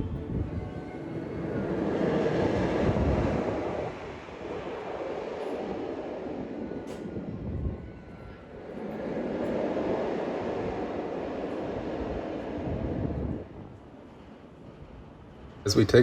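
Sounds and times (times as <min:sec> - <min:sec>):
roller coaster running on track: 0:00.0 - 0:16.0.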